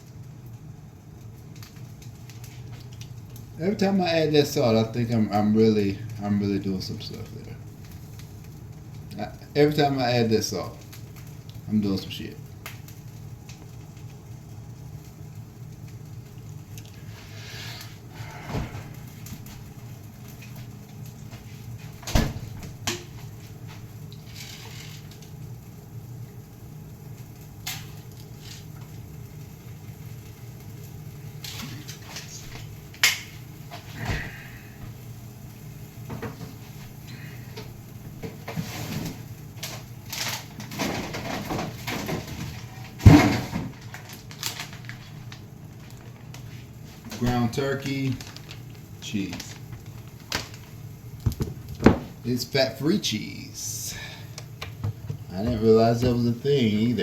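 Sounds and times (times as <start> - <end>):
steady low hum: 0.0 - 57.0
kitchen items knocking and clattering: 40.6 - 44.0, 51.2 - 52.2, 54.7 - 56.4.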